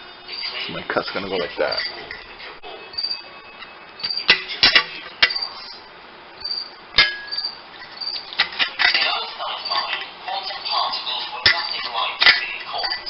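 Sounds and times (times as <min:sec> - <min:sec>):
metal corner bead clicking and clanking: 0:03.0 - 0:05.6, 0:06.9 - 0:10.1, 0:11.4 - 0:13.0.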